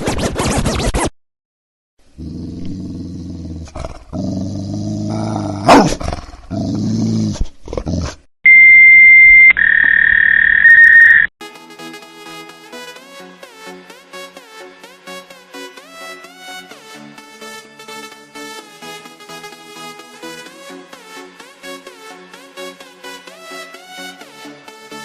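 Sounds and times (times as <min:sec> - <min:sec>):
dog growling: 0:02.2 - 0:08.2
dial-up modem connecting: 0:08.5 - 0:11.3
music: 0:11.4 - 0:25.0.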